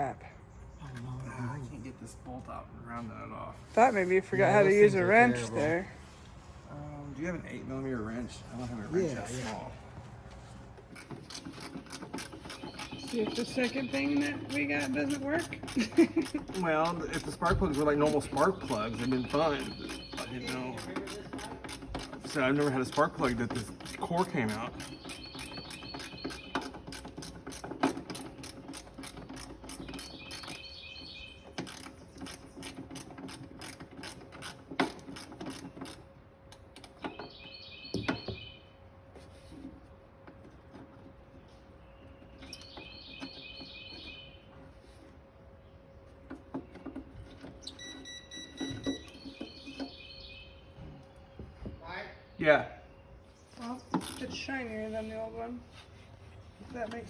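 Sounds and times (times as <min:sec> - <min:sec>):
ratchet wrench clicking: 0:10.9 - 0:30.7, 0:31.6 - 0:36.9
bird chirping: 0:12.0 - 0:21.5, 0:22.2 - 0:27.0, 0:29.2 - 0:32.8, 0:37.0 - 0:38.8, 0:41.4 - 0:44.6, 0:45.6 - 0:54.5.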